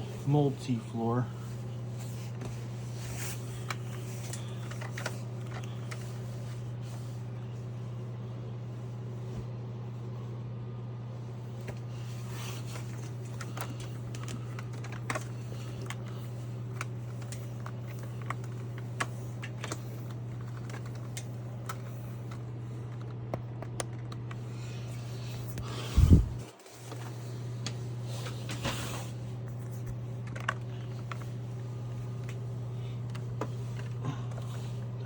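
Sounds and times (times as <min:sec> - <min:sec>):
vacuum cleaner humming: 0:11.6 - 0:35.0.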